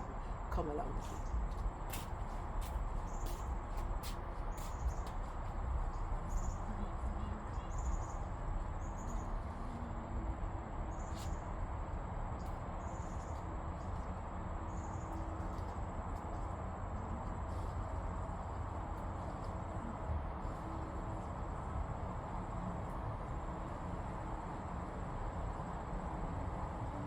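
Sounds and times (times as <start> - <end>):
insect drone: 2.8 - 3.6, 5.7 - 12.0, 12.6 - 14.0, 14.7 - 16.4.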